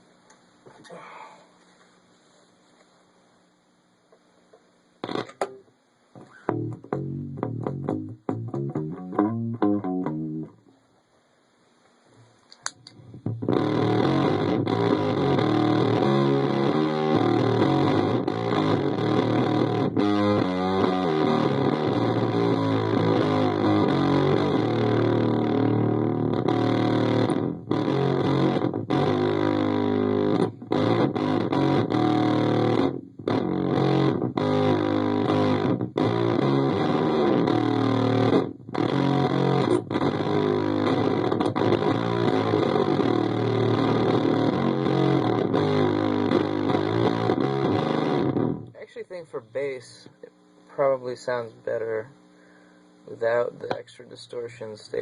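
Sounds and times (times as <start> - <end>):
distorted fuzz bass riffing: 6.2 - 10.5, 13.0 - 49.0.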